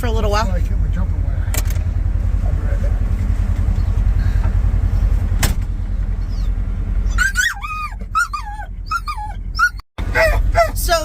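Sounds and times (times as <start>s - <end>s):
vehicle engine idling: 0.0s - 11.0s
dog whining: 6.2s - 11.0s.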